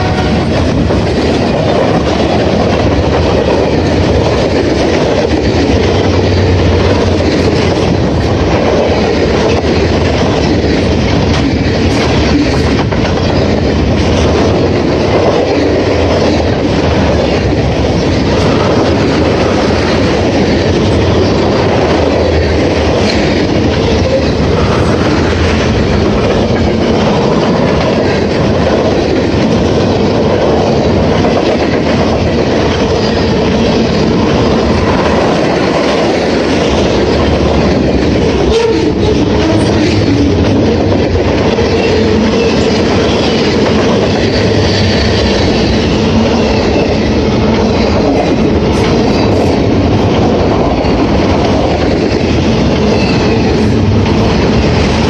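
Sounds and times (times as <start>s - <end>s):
freight train wheels on rails: 0.0s - 55.0s.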